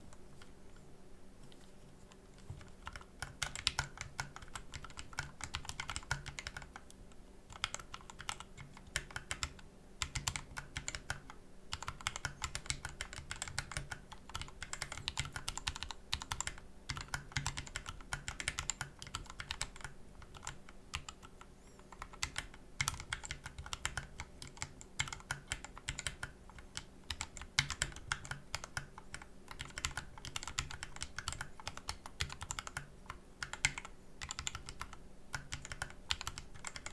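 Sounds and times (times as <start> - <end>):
mechanical keyboard keystroke clacks: 27.1 - 36.9.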